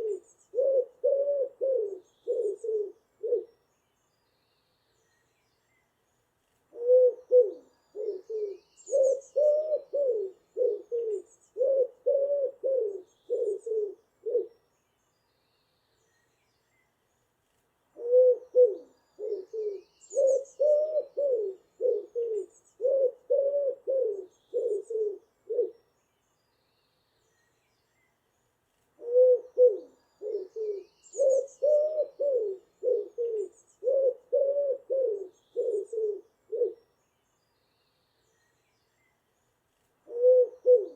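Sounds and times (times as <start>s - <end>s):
pigeon cooing: 0.0s - 3.5s, 6.7s - 14.5s, 18.0s - 25.8s, 29.0s - 36.8s, 40.1s - 40.9s
songbird chirps: 0.0s - 40.9s.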